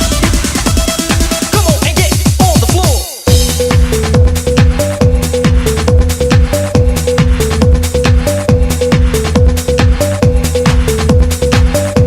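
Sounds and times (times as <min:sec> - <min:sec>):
electronic dance music: 0:00.0 - 0:12.0
fast kick-drum beat: 0:00.0 - 0:12.0
synth melody: 0:03.2 - 0:12.0.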